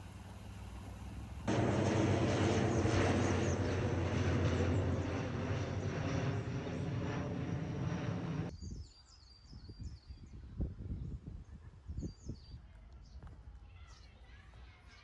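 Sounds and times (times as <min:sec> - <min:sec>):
engine drone: 0:00.0 - 0:08.5.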